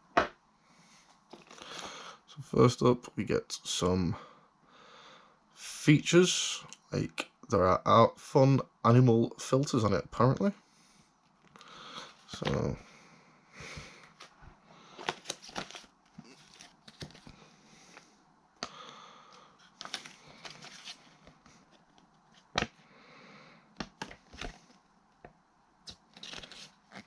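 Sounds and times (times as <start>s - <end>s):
packaging rustling: 14.1s - 17.4s, 19.6s - 22.8s, 25.9s - 27.0s.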